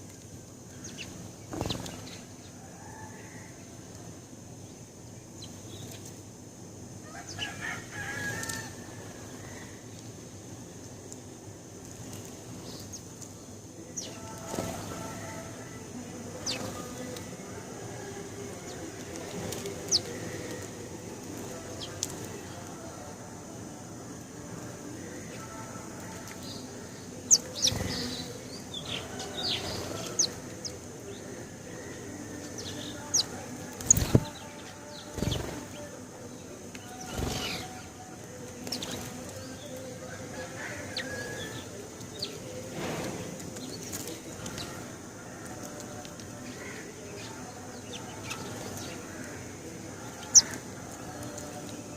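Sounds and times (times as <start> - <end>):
sparrows chirping: 0.0 - 2.6, 4.5 - 6.3, 12.2 - 51.9
low background noise: 0.0 - 51.9
wings flapping: 33.7 - 34.4, 35.1 - 35.8, 37.0 - 37.8.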